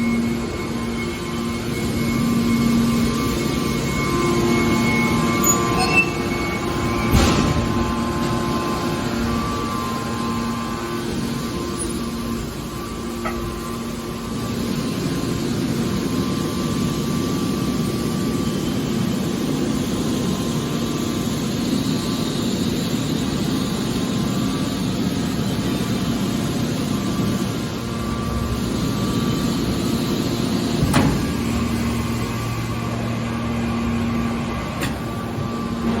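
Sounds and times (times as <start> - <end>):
scrap metal baler humming: 1.6 - 16.2, 26.7 - 36.0.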